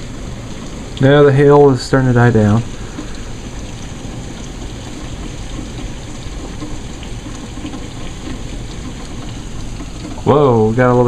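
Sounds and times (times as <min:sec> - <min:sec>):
heavy rain falling: 0:00.0 - 0:11.0
faint hailstone ticks: 0:02.6 - 0:11.0.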